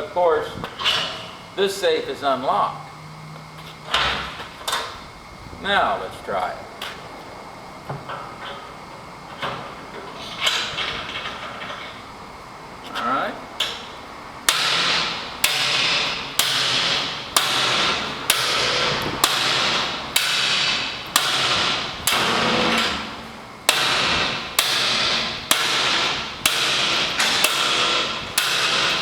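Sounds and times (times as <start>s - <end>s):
hammer striking steel punch: 14.5s - 29.0s.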